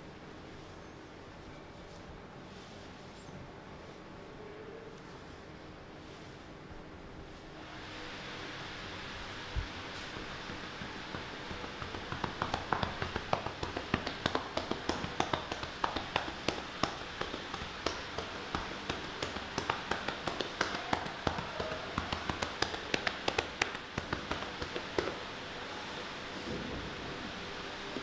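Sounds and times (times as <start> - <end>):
steady hiss: 1.2 - 28.0
rapid sharp tapping: 10.2 - 25.3.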